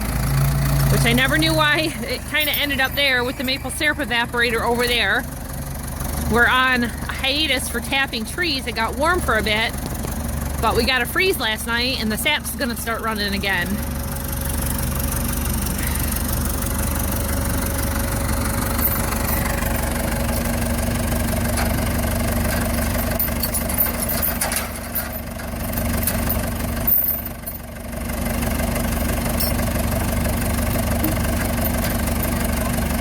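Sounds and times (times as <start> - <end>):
diesel engine running: 0.0 - 33.0.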